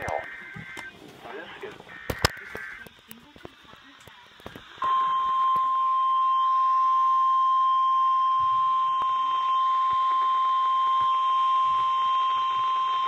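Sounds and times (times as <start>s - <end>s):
steady warning alarm beep: 4.8s - 13.0s.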